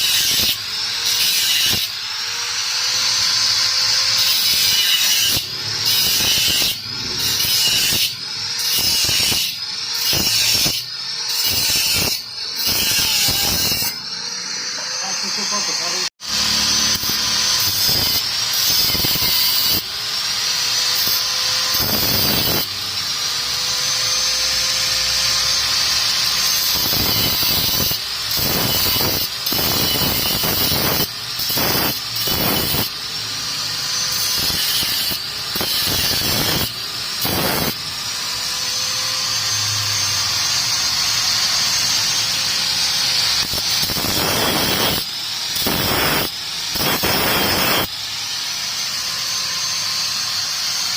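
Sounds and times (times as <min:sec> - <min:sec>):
hissing cutting noise: 0:00.0 - 0:19.8, 0:39.5 - 0:50.9
power tool motor whining: 0:00.0 - 0:50.9.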